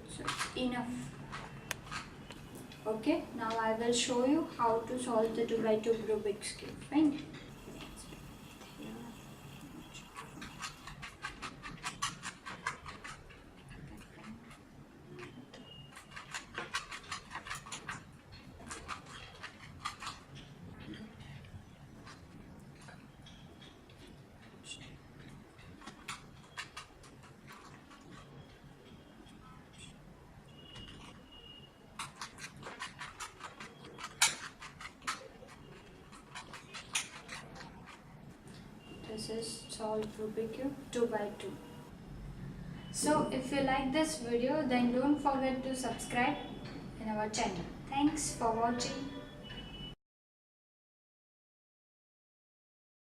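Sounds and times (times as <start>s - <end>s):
puzzle cube plastic clicks: 32.0s - 38.6s.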